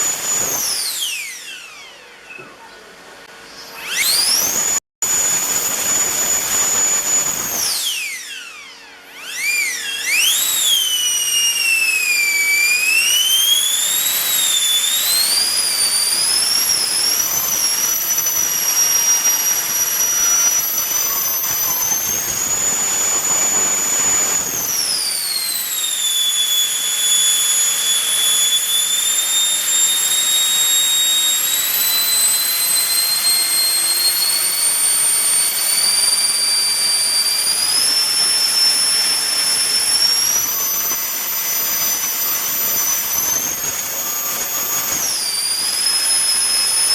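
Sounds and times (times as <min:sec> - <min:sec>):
electric ducted fan whine: 0:00.0 - 0:46.9.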